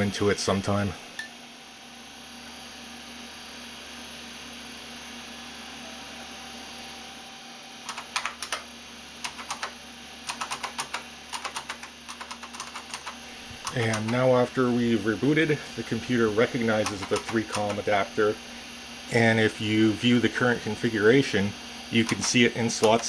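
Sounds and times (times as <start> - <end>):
steady low hum: 6.8 - 23.0
keyboard keys clicking: 7.9 - 8.6, 9.2 - 14.3, 16.8 - 17.8, 22.0 - 23.0.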